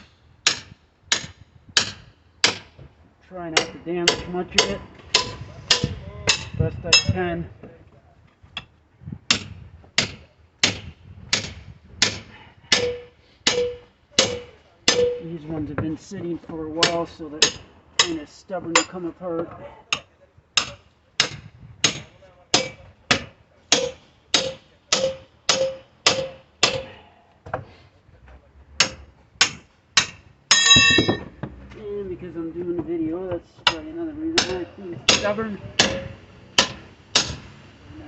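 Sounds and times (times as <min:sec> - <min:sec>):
sledgehammer striking steel bar: 0:03.6 - 0:07.2, 0:09.3 - 0:15.2, 0:20.6 - 0:26.9, 0:28.8 - 0:31.3, 0:34.4 - 0:37.4
sledgehammer striking crowbar: 0:28.8 - 0:31.4, 0:34.4 - 0:37.4.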